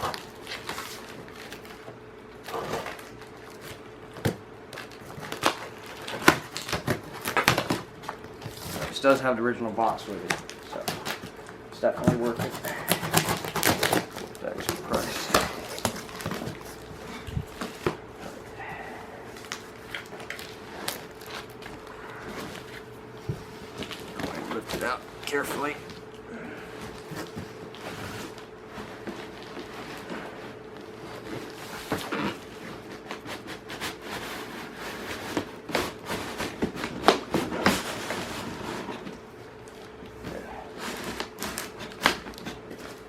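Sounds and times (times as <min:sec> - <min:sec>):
faint steady hum: 0:00.0 - 0:43.0
packing rustling: 0:09.8 - 0:43.0.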